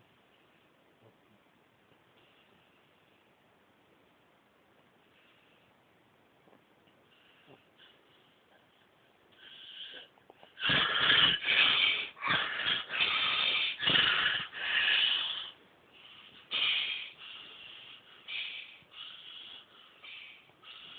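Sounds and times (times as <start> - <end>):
loud snoring: 9.9 - 15.6.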